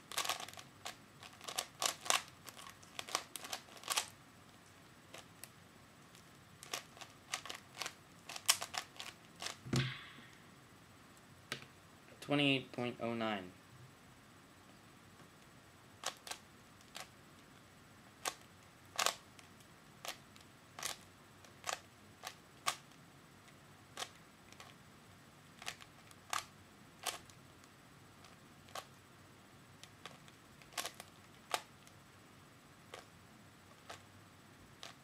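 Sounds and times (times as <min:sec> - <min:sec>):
plastic puzzle cube clicks: 0:00.1 - 0:04.1, 0:06.6 - 0:09.6, 0:18.2 - 0:19.2, 0:29.8 - 0:31.9.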